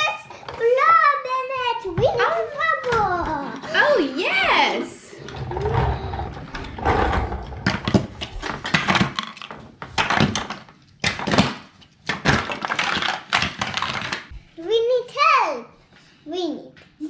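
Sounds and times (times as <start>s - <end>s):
plastic toys clattering: 5.2s - 14.3s.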